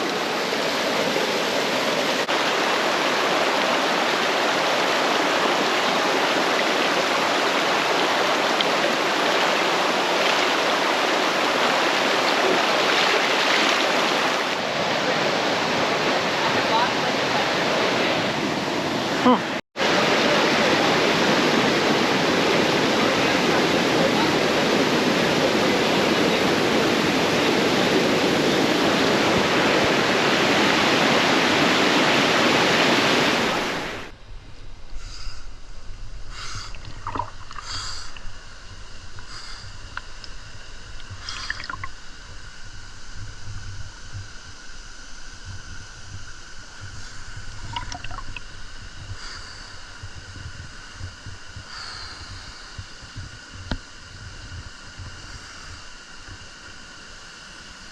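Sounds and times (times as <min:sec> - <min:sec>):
waterfall rushing: 0:00.0 - 0:34.1.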